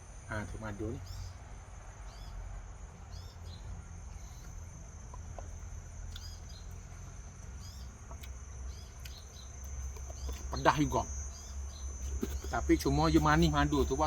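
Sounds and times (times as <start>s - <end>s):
high-pitched insect drone: 0.0s - 14.0s.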